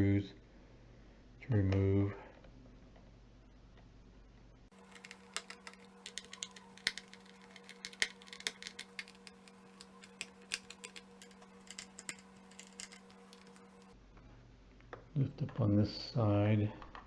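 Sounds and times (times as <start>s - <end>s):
faint steady hum: 0.0s - 17.0s
screwdriver clicking on screws: 4.8s - 13.6s.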